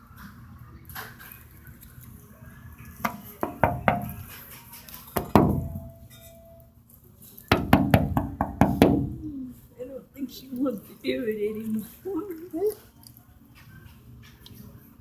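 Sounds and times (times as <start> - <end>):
sharp knocks and taps: 3.0 - 4.4, 5.2 - 5.9, 7.5 - 9.1.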